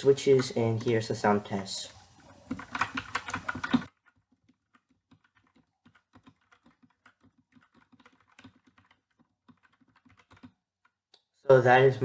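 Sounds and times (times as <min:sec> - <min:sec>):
mechanical keyboard typing: 0:02.4 - 0:11.0.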